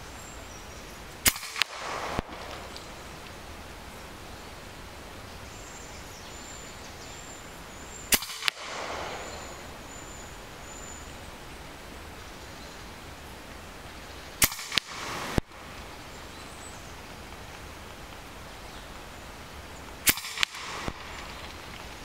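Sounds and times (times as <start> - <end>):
air rifle shot crack: 1.2 - 3.9, 8.1 - 10.9, 14.4 - 16.2, 20.0 - 21.9
second sharp crack with echo: 1.3 - 3.4, 8.1 - 10.8, 14.4 - 15.7, 20.0 - 21.9.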